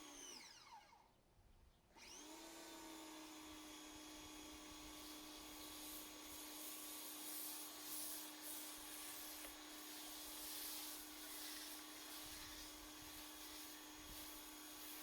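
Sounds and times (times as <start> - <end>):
pressure washer pump hum: 2.0 - 15.0
foam cannon spray hiss: 5.7 - 15.0.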